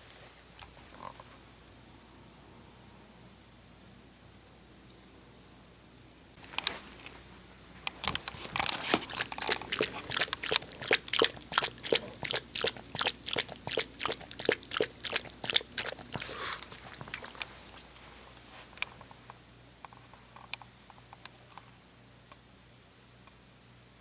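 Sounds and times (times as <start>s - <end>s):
dog mouth clicking while eating: 8.0s - 17.9s.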